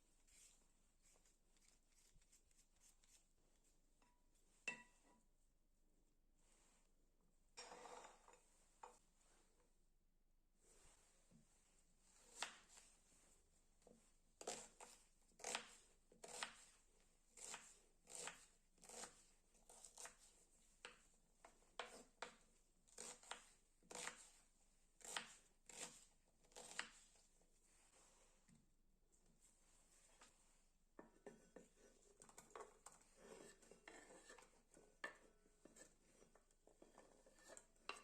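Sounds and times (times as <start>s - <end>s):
knife cutting on cutting board: 25.0s - 27.0s.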